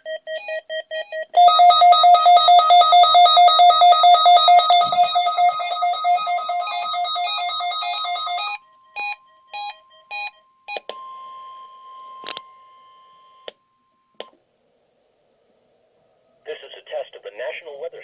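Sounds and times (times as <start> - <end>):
steady alert tone: 1.4 - 8.5
short beeps: 1.4 - 8.6
warbling alarm tone: 1.4 - 8.6.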